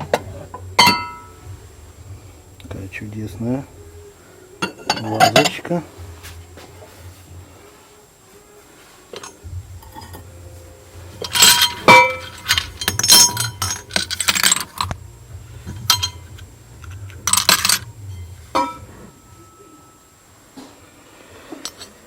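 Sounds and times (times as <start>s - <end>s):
glass and china clinking: 0.8s - 1.4s, 4.6s - 5.6s, 11.2s - 14.9s, 15.7s - 16.3s, 17.2s - 19.9s.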